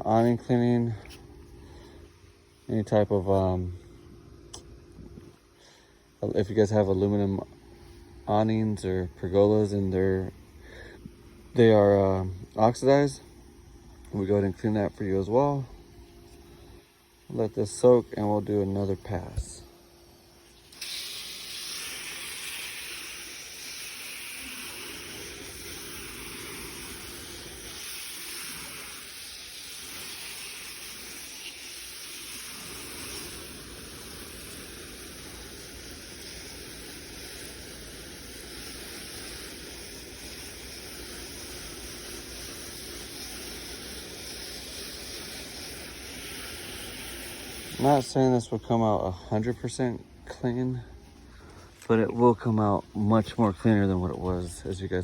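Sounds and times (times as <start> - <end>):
water spray hissing: 16.3 - 49.8.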